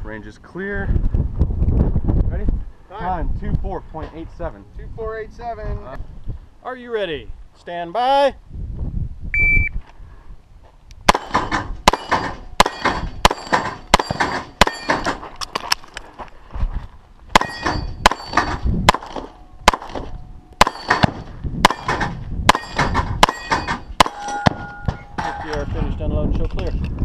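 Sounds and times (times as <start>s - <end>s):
rapid pistol shots: 11.1s - 15.2s, 17.4s - 24.7s
steel targets ringing: 11.8s - 15.1s, 17.4s - 25.6s.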